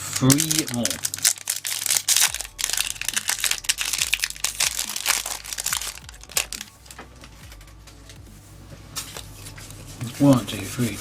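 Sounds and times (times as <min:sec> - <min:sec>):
foil wrapper crinkling: 0:00.0 - 0:07.0.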